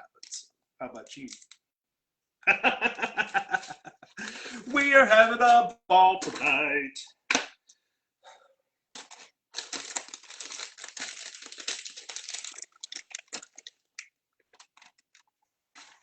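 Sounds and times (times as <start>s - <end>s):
plastic crinkling and rustling: 9.0s - 16.0s.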